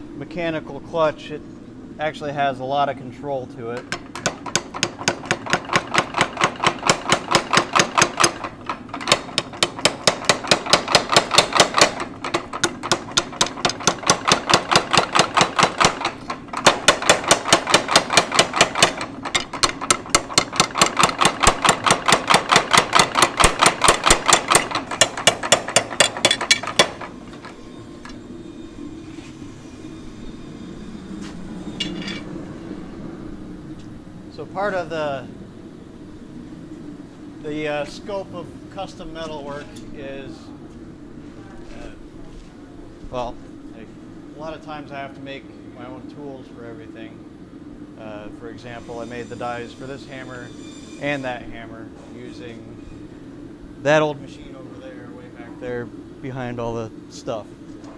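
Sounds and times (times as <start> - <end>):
steady low hum: 0.0 - 57.9
power hammer pounding hot steel: 3.8 - 27.6.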